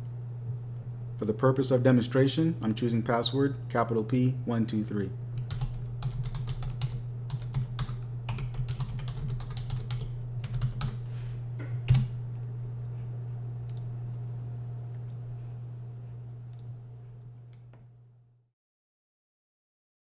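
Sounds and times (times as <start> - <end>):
steady low hum: 0.0 - 18.4
typing on keyboard: 5.4 - 11.0.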